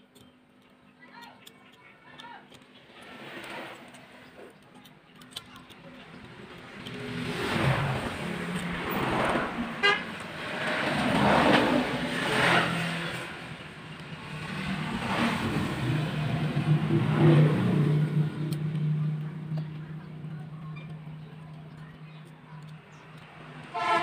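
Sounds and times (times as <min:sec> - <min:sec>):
street traffic passing: 0:00.0 - 0:24.0
car horn toot: 0:09.8 - 0:10.1, 0:23.7 - 0:24.0.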